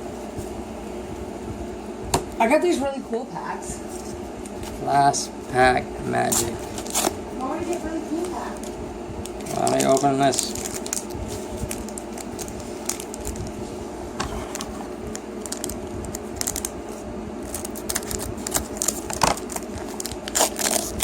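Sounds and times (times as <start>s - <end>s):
foil pack tearing: 6.2s - 7.2s, 8.6s - 13.6s, 14.4s - 21.0s
cards rustling: 6.2s - 13.6s, 14.3s - 21.0s.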